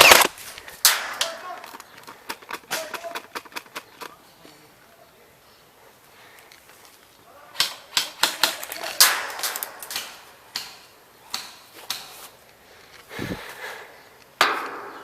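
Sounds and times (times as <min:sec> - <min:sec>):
airsoft gun shots: 0:00.0 - 0:01.4.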